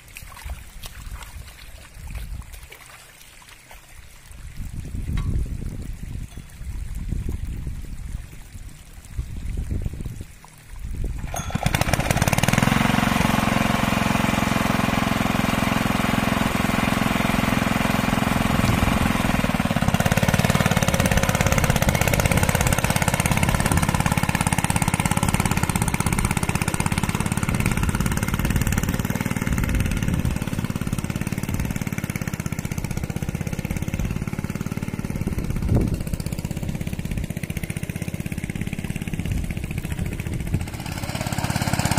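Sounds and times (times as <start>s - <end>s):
diesel engine starting and knocking: 11.2s - 41.9s.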